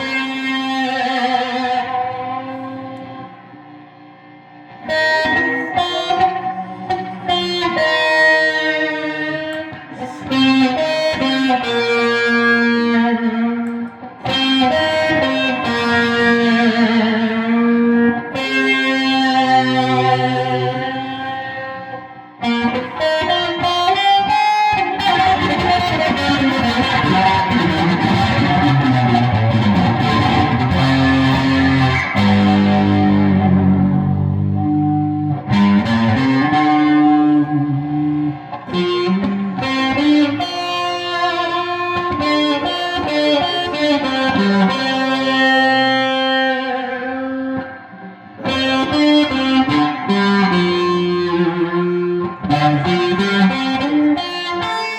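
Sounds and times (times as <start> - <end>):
electric guitar with effects: 0.0 - 54.9.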